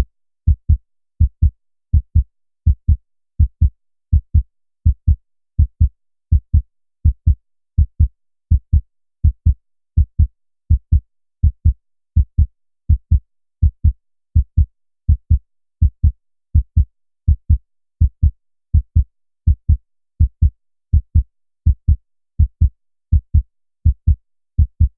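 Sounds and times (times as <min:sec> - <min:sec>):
heartbeat thumps: 0:00.5 - 0:24.9.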